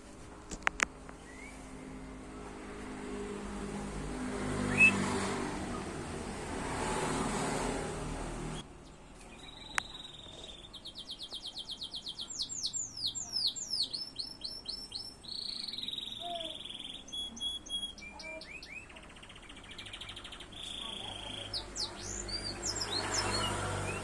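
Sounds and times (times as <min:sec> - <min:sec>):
canary singing trills: 0:04.6 - 0:05.8, 0:08.8 - 0:24.0.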